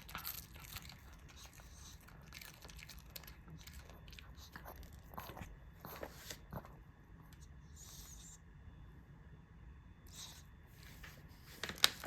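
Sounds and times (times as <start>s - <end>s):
dog crunching a treat: 0.0s - 6.8s, 11.6s - 12.0s.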